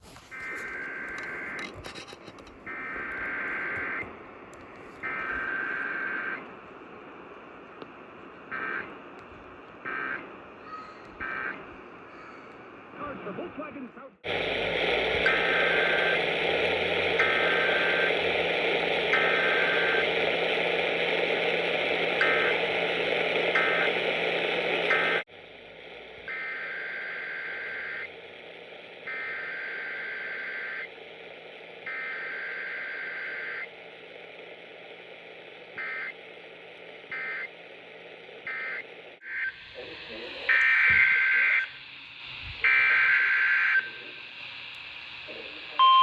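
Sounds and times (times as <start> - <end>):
radio static: 0.0 - 46.0
screechy digital data bursts: 38.5 - 44.6.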